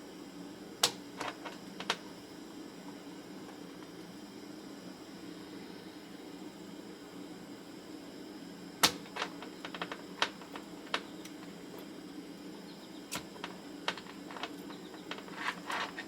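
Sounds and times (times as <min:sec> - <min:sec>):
steady low hum: 0:00.0 - 0:16.0
sharp snap: 0:08.8 - 0:09.1.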